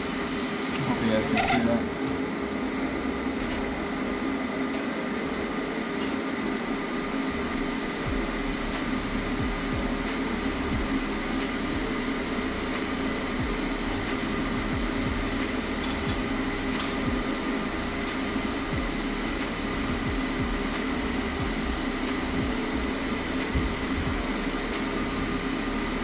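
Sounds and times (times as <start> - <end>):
welding arc buzzing: 7.9 - 26.0.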